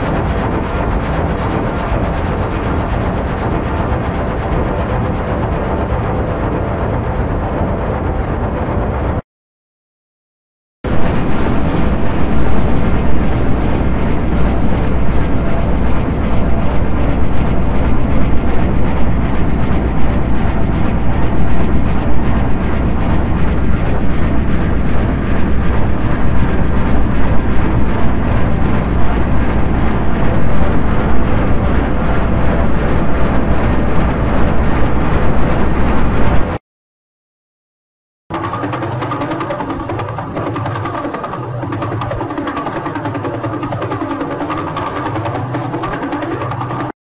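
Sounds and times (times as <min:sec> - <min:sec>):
deep spaceship hum: 0:10.9 - 0:36.5, 0:38.3 - 0:47.0.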